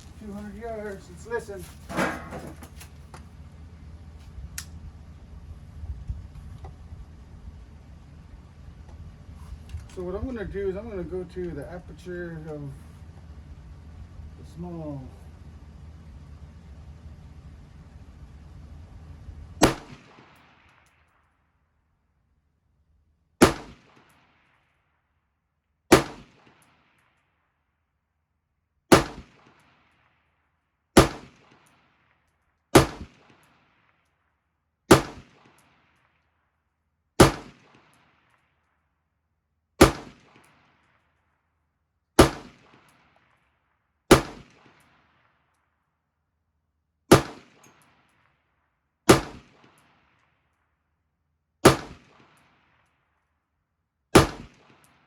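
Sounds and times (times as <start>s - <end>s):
rifle shots with echo: 19.6s - 21.3s, 23.4s - 24.9s, 25.9s - 27.2s, 28.9s - 30.2s, 31.0s - 34.0s, 34.9s - 36.2s, 37.2s - 38.6s, 39.8s - 41.2s, 42.2s - 45.6s, 47.1s - 48.4s, 49.1s - 50.6s, 51.6s - 53.2s, 54.1s - 55.0s.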